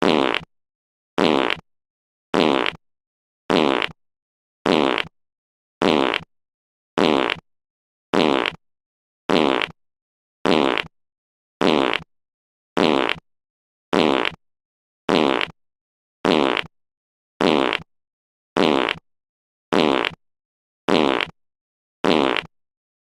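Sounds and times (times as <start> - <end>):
fart sound effect: 0.0 - 0.5, 1.2 - 1.6, 2.4 - 2.8, 3.5 - 4.0, 4.7 - 5.1, 5.8 - 6.3, 7.0 - 7.4, 8.2 - 8.6, 9.3 - 9.8, 10.5 - 10.9, 11.6 - 12.1, 12.8 - 13.2, 13.9 - 14.4, 15.1 - 15.6, 16.2 - 16.7, 17.4 - 17.9, 18.6 - 19.0, 19.7 - 20.2, 20.9 - 21.4, 22.0 - 22.5.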